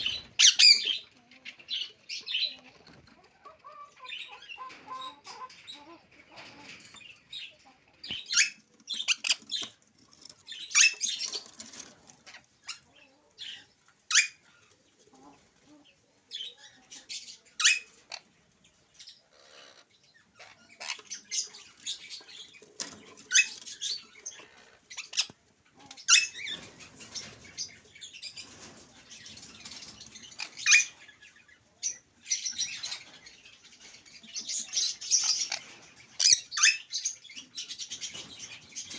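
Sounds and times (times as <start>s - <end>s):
parakeet chirps and squawks: 0.0s - 1.1s, 3.6s - 9.7s, 10.5s - 11.4s, 12.2s - 14.4s, 17.1s - 18.2s, 19.0s - 22.5s, 23.2s - 25.4s, 26.0s - 28.4s, 29.8s - 38.9s.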